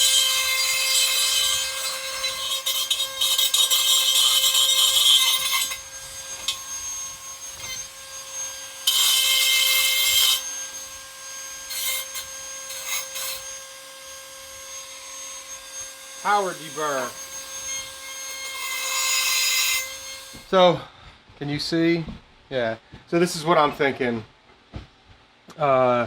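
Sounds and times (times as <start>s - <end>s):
deburring tool scraping pipe edge: 0.0s - 11.0s, 11.6s - 13.7s, 15.8s - 20.5s.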